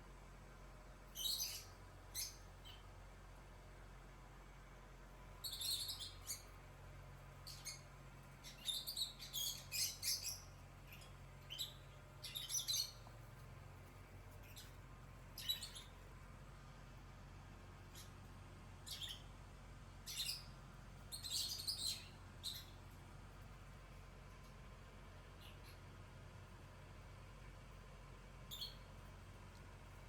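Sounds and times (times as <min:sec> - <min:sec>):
high-pitched chirping calls: 0:01.2 - 0:02.8, 0:05.4 - 0:06.5, 0:08.4 - 0:13.0, 0:15.4 - 0:15.9, 0:18.9 - 0:19.2, 0:20.1 - 0:20.5, 0:21.1 - 0:22.7.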